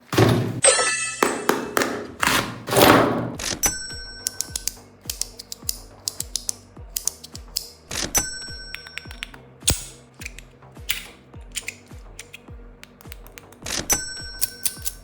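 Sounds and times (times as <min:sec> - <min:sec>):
music with low beat: 0:03.4 - 0:15.0
fidget toy clicking: 0:04.2 - 0:07.9, 0:08.7 - 0:13.7.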